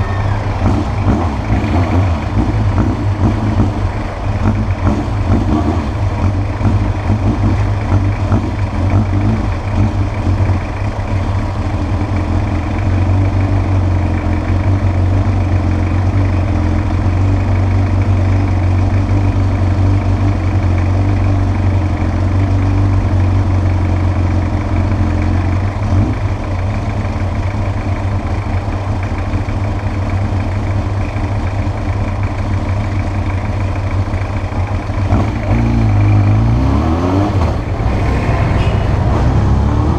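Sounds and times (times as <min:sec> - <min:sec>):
motorcycle engine idling: 0:00.0 - 0:36.6, 0:37.4 - 0:39.7.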